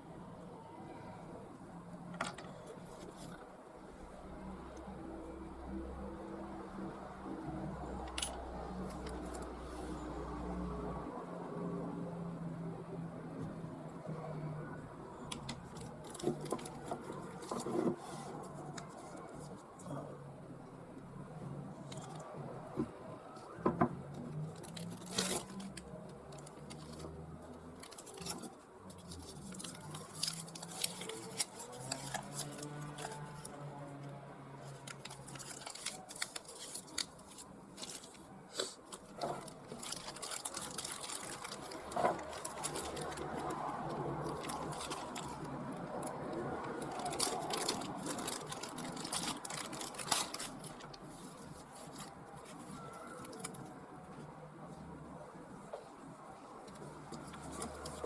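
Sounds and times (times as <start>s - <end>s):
small objects rustling and clicking: 14.8s - 20.2s, 21.8s - 54.2s, 55.4s - 58.0s.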